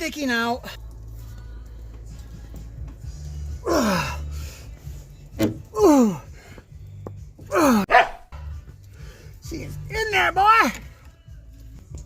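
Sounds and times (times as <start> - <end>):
man groaning with effort: 3.6 - 4.3, 5.7 - 6.3, 7.5 - 7.9.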